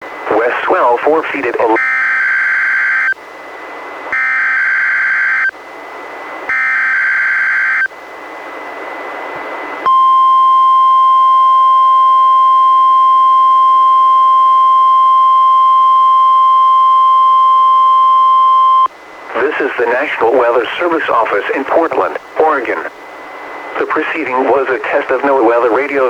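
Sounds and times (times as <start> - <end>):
radio hiss: 0.1 - 1.8, 18.9 - 26.0
steady alarm tone: 1.8 - 3.2, 4.1 - 5.6, 6.5 - 7.9.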